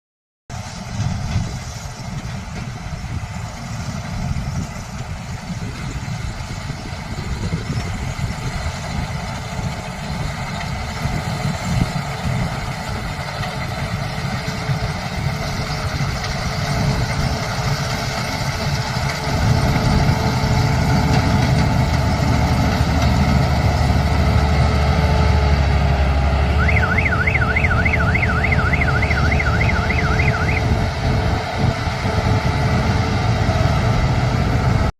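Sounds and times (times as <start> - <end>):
combine harvester diesel engine: 0.5 - 34.9
warbling siren-like electronic tone: 26.4 - 32.4.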